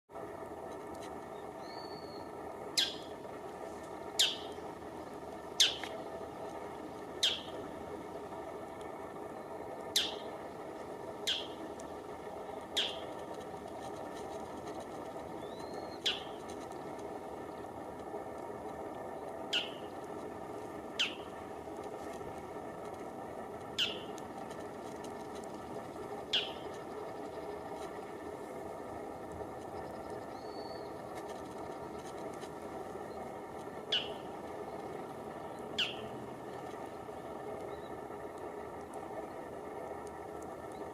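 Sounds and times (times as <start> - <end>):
steady low background hum: 0.1 - 40.9
shrike calling: 1.3 - 8.4, 9.2 - 13.5, 15.2 - 17.8, 19.1 - 20.1, 20.8 - 21.6, 23.7 - 24.2, 26.0 - 28.2, 29.6 - 31.9, 33.0 - 38.1.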